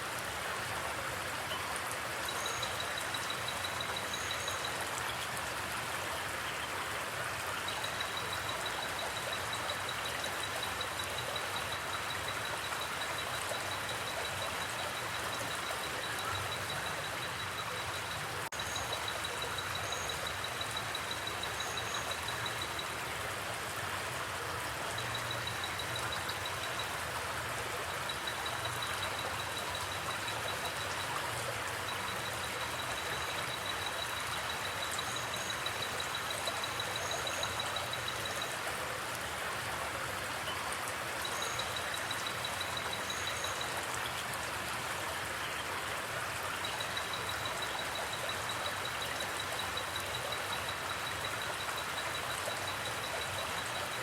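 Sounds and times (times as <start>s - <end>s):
creek water rushing: 0.0s - 54.0s.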